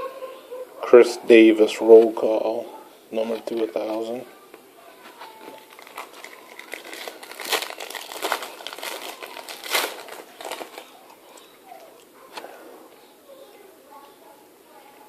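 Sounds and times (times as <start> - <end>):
wrapper crinkling and tearing: 5.2 - 11.4.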